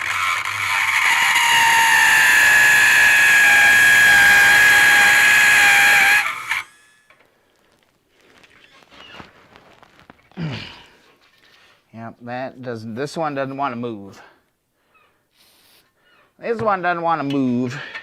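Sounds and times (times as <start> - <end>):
power tool whining: 0.0 - 7.2.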